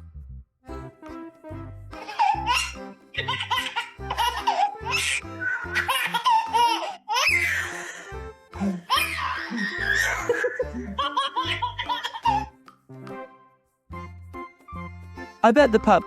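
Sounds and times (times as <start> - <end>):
background music with steady beat: 0.7 - 16.0
baby laughing and squealing: 2.0 - 12.5.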